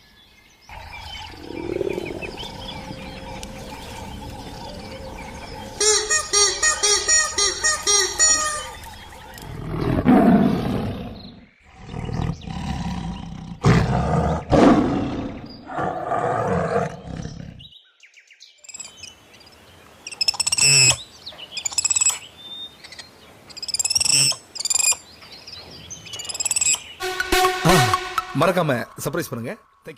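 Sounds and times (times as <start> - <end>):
high bird chirping: 0.7 - 9.4.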